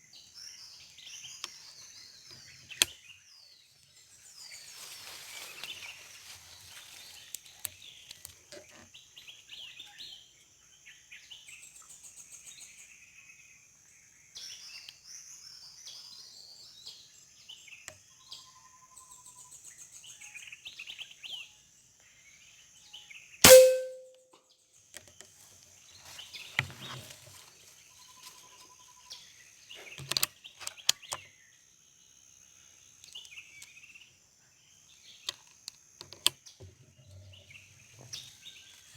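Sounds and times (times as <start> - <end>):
forest birds chirping: 0.0 - 24.0, 25.8 - 38.9
air rifle shot: 23.5 - 24.0.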